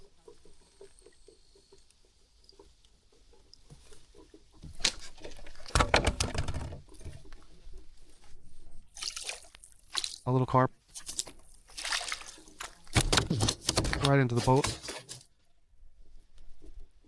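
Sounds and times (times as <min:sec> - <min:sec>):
fish handling noise: 0:00.0 - 0:15.4
water splashing: 0:08.8 - 0:15.2.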